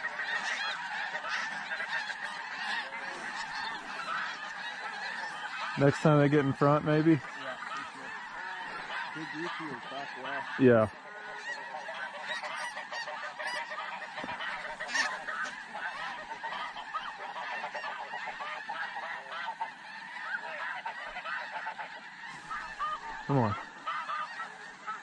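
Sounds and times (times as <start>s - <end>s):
snow geese honking: 0.0s - 25.0s.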